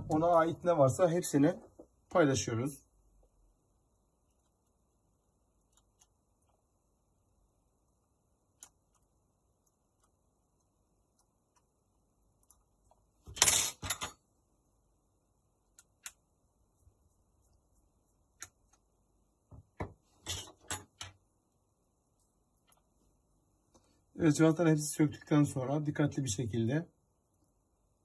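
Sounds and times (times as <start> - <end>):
tools and parts clattering: 13.3 - 14.2, 20.2 - 21.1.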